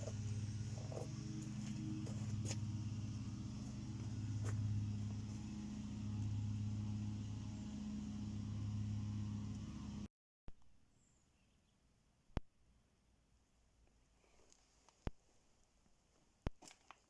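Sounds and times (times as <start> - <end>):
car engine idling: 0.0 - 10.1.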